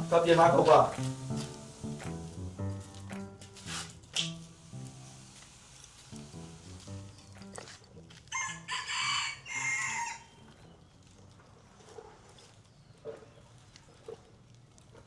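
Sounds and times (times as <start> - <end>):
rooster crowing: 8.3 - 10.4.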